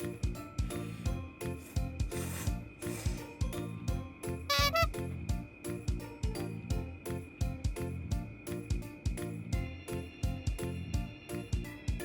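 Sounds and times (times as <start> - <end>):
drum beat: 4.5 - 4.9.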